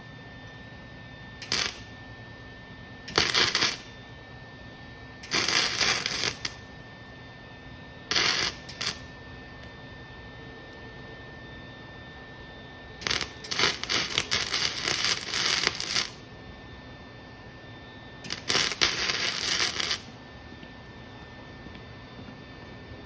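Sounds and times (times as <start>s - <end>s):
electric arc welding crackle: 1.4s - 2.0s, 3.1s - 4.1s, 5.2s - 6.8s, 8.1s - 9.2s, 13.0s - 16.3s, 18.2s - 20.4s.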